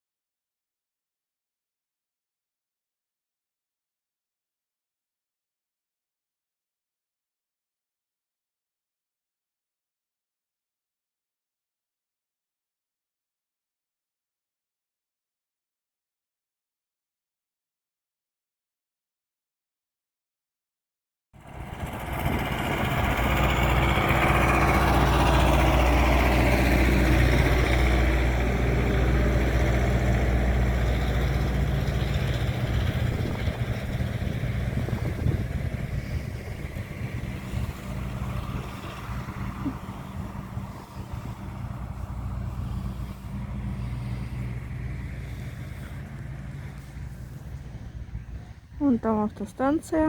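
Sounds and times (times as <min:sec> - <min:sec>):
vehicle engine humming: 0:21.4 - 0:50.0.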